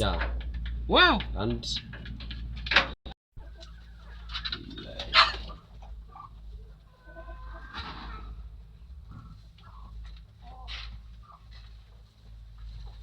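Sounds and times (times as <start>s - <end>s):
chickens and chicks calling: 3.4s - 11.7s.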